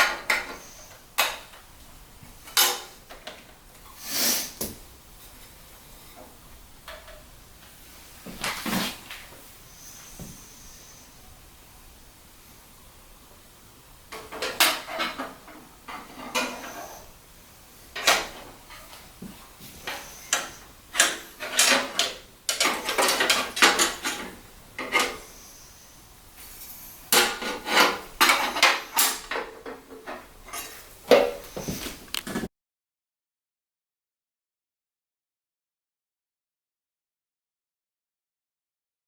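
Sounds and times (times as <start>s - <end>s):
hard objects clattering: 19.8s - 25.2s.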